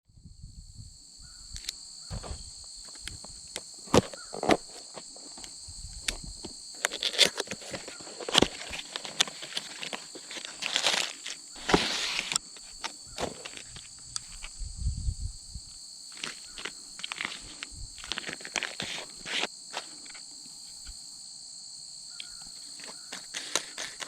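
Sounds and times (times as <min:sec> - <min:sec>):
insect trill: 0:00.1 - 0:24.0
packaging rustling: 0:02.1 - 0:14.5, 0:16.1 - 0:20.2, 0:22.8 - 0:24.0
packaging clicks and taps: 0:02.9 - 0:14.4, 0:16.2 - 0:20.2, 0:22.2 - 0:24.0.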